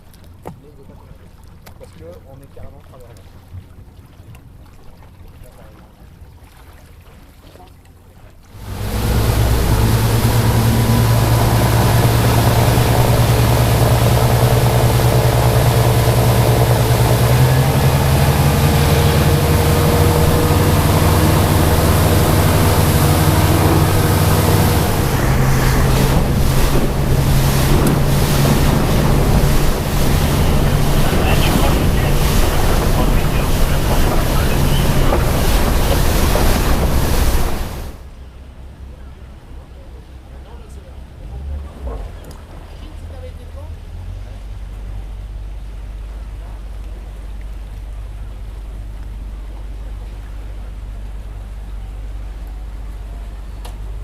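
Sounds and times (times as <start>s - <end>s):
motorboat engine humming: 0.0s - 54.0s
rushing water: 0.0s - 54.0s
wind buffeting microphone: 8.5s - 38.0s.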